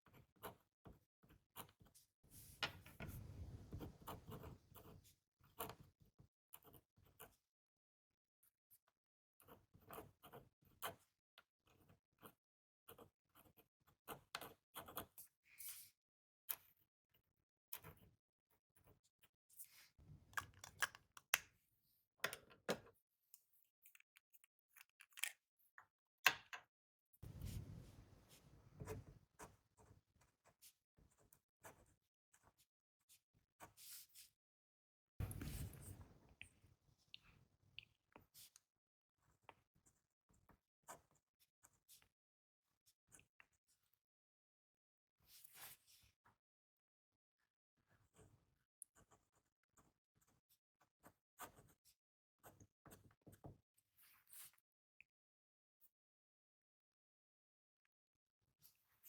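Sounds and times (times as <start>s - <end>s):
rustling and rubbing: 27.2s - 29.1s, 35.2s - 36.2s.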